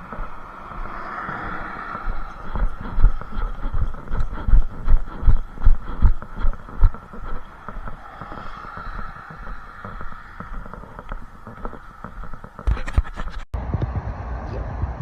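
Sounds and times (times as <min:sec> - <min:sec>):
steady rushing hiss: 0:00.0 - 0:13.5.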